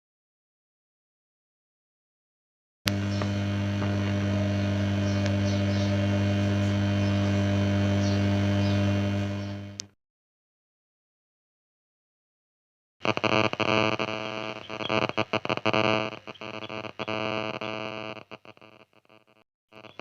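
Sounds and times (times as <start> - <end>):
click: 2.9 - 4.2, 5.1 - 5.7, 9.4 - 9.9
electrical mains hum: 2.9 - 10.0, 13.0 - 20.0.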